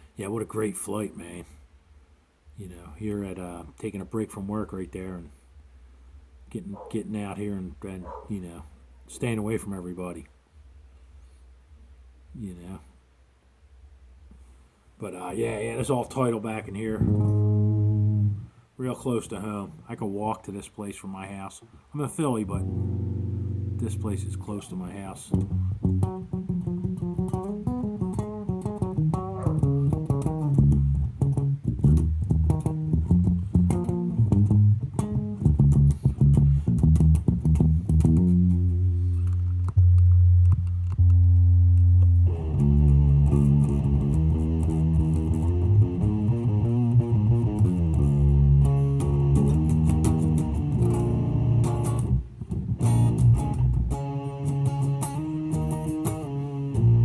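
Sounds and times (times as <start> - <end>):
bass and guitar music: 14.2 - 19.9, 22.0 - 57.0.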